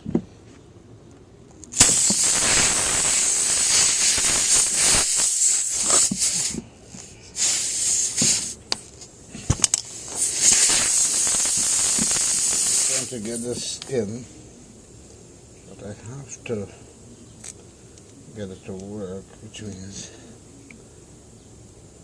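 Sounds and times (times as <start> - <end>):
air hissing out of a tire: 1.7 - 13.8.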